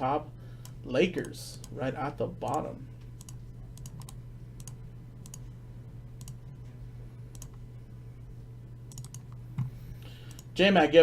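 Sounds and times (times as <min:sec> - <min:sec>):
low electrical hum: 0:00.0 - 0:11.0
computer mouse clicks: 0:02.4 - 0:05.5, 0:06.2 - 0:06.4, 0:07.3 - 0:07.6, 0:08.9 - 0:09.4, 0:10.2 - 0:10.5.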